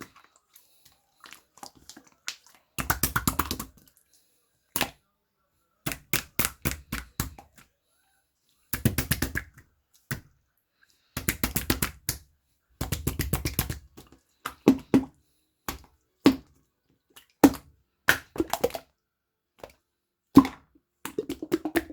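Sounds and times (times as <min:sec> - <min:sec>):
squishy toy crackly squishing: 0:00.0 - 0:04.2.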